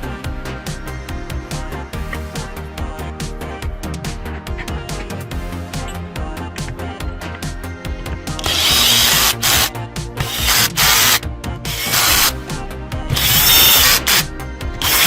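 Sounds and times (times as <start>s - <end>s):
background music: 0.0s - 15.0s
mechanical ratchet-like whirring: 8.4s - 12.4s, 13.2s - 15.0s.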